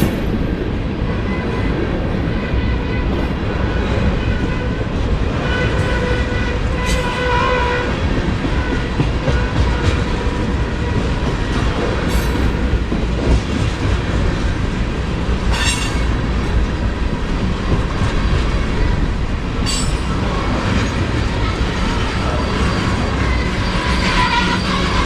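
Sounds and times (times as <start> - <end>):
train wheels rumbling on rail: 0.0 - 25.0
metallic squeals: 21.6 - 25.0.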